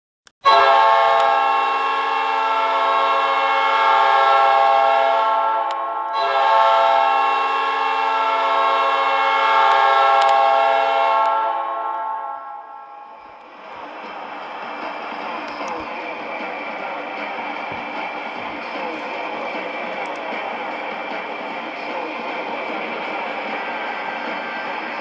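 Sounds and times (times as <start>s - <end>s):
hockey goal horn blasts: 0.4s - 12.6s.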